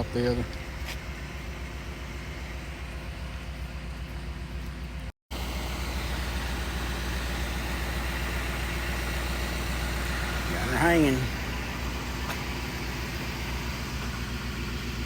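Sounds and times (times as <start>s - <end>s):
engine idling: 0.0s - 15.0s.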